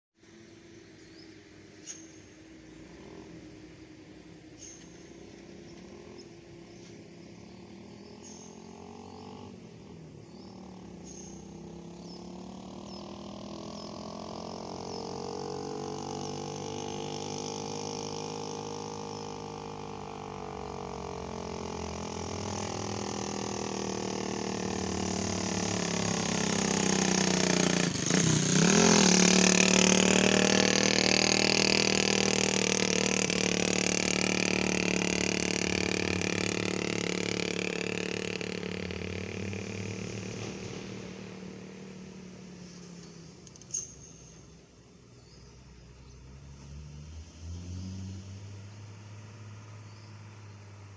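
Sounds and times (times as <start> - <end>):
heavy vehicle engine approaching: 14.8 - 43.4.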